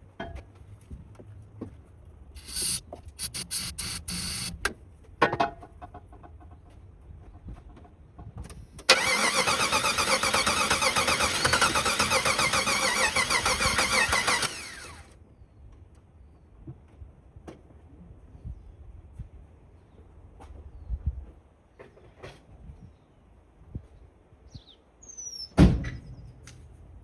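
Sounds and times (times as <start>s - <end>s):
aerosol can hissing: 2.4s - 4.6s
engine starter cranking: 2.4s - 4.6s, 8.9s - 15.1s.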